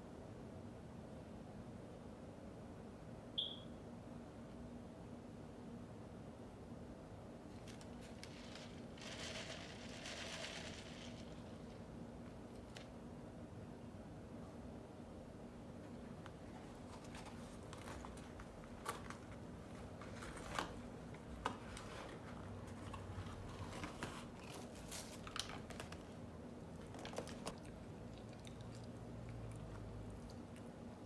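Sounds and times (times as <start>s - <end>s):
low background hum: 0.0s - 31.0s
crunching and chewing food: 7.5s - 12.9s, 15.8s - 31.0s.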